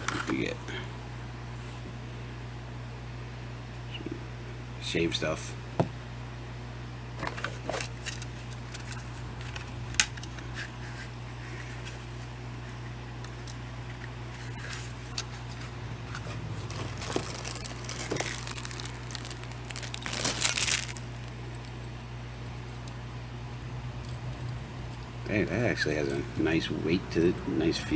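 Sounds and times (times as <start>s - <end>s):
steady low hum: 0.0s - 27.9s
packaging crinkling and tearing: 15.1s - 21.7s.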